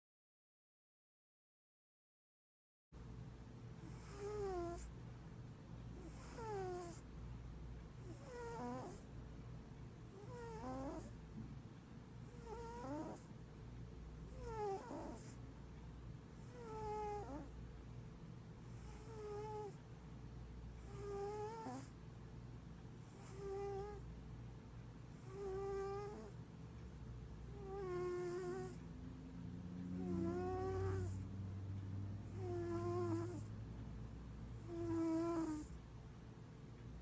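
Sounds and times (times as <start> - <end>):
cat snoring: 3.8 - 4.9, 5.9 - 7.1, 8.0 - 9.1, 10.0 - 11.2, 12.2 - 13.3, 14.3 - 15.4, 16.4 - 17.6, 18.6 - 19.8, 20.8 - 22.0, 23.0 - 24.0, 25.1 - 26.4, 27.5 - 31.4, 32.2 - 33.6, 34.5 - 35.8.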